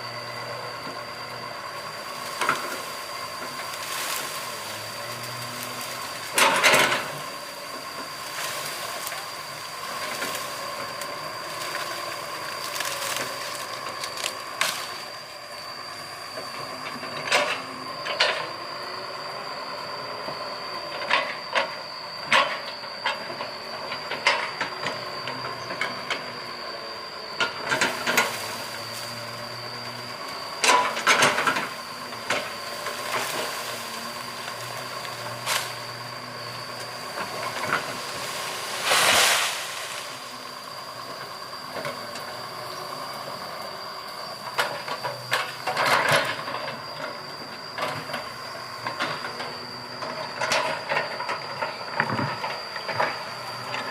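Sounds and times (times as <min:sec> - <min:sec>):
excavator whine: 0:00.0 - 0:53.9
excavator knocks and clanks: 0:05.8 - 0:07.9, 0:20.9 - 0:26.3, 0:27.4 - 0:28.5, 0:30.6 - 0:35.9, 0:44.4 - 0:47.2, 0:47.8 - 0:53.9.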